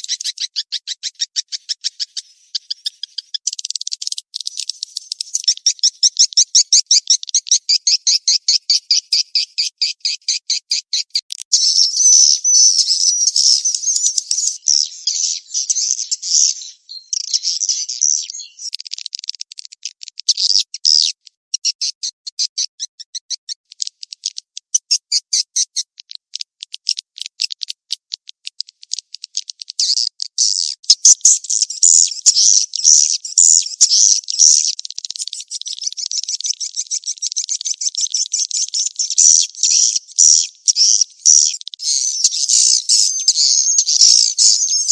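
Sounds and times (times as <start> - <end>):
swiftlet calls twittering: 0.0 - 18.8, 29.4 - 44.9.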